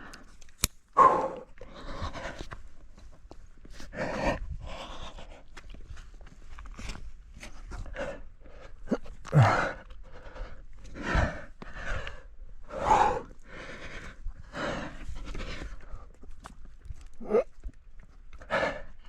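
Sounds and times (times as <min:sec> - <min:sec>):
person breathing hard: 0:01.0 - 0:02.6, 0:03.7 - 0:05.7, 0:07.6 - 0:16.2, 0:18.4 - 0:19.0
person grunting: 0:08.9 - 0:09.6, 0:17.2 - 0:17.5.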